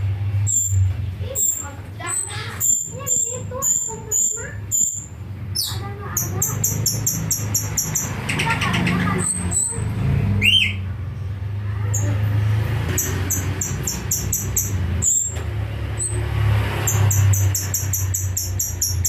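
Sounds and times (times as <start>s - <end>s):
songbird chirping: 0.3s - 10.9s.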